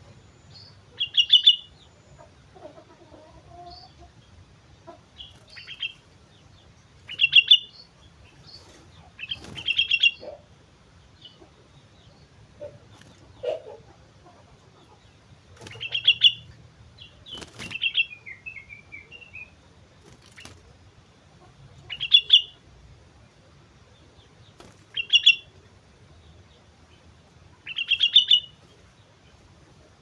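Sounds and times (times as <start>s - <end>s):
bird chirping phrases: 0.0s - 2.3s, 5.2s - 13.7s, 14.8s - 20.6s, 21.7s - 22.7s, 23.4s - 29.4s.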